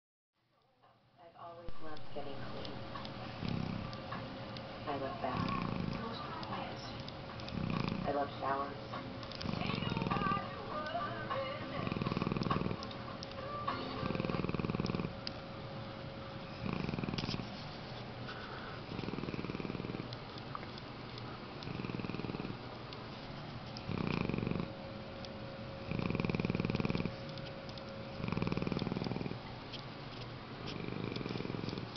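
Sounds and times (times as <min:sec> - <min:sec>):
dog snoring: 0:02.9 - 0:04.2, 0:04.9 - 0:13.0, 0:13.6 - 0:15.2, 0:16.5 - 0:17.4, 0:18.4 - 0:20.1, 0:21.6 - 0:22.6, 0:23.8 - 0:24.7, 0:25.8 - 0:27.2, 0:28.1 - 0:29.5, 0:30.6 - 0:31.9.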